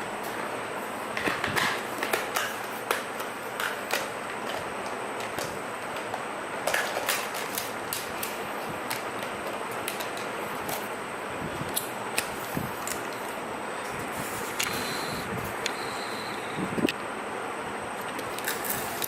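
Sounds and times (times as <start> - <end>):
steady hiss: 7.7 - 19.0.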